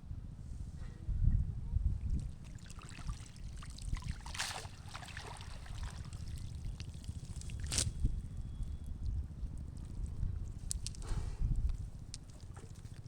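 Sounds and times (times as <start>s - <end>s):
water trickling and splashing: 2.0s - 11.0s, 11.8s - 13.0s
loud splashes: 2.5s - 6.7s.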